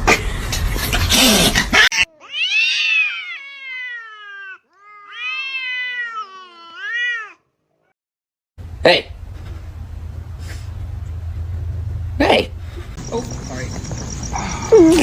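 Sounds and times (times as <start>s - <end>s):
cat meowing: 2.1s - 7.4s.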